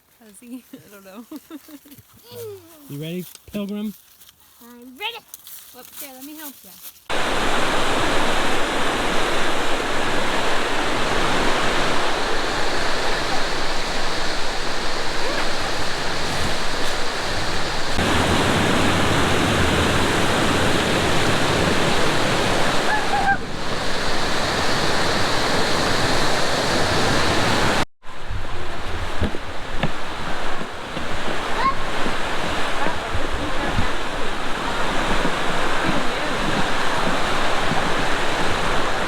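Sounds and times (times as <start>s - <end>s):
waterfall rushing: 7.1s - 39.0s.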